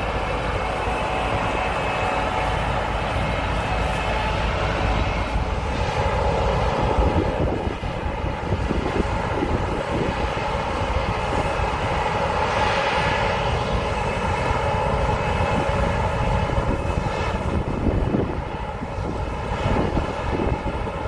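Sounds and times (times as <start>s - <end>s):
combine harvester machinery drone: 0.0s - 21.0s.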